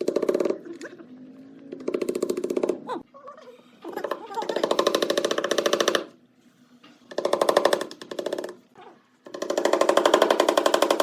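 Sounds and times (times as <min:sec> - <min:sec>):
power tool hammering: 0:04.7 - 0:06.1, 0:07.1 - 0:08.5, 0:09.3 - 0:11.0.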